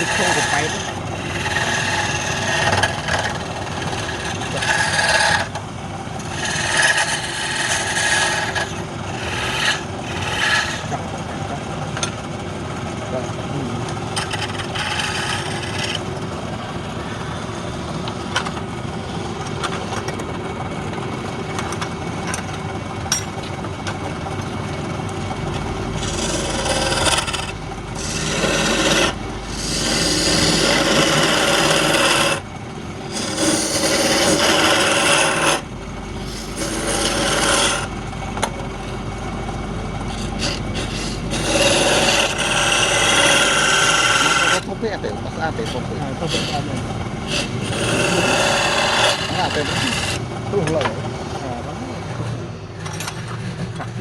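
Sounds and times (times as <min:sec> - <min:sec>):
tool scraping wood on lathe: 0:00.0 - 0:12.2, 0:13.9 - 0:16.4, 0:25.4 - 0:50.2
lathe humming: 0:00.0 - 0:53.3.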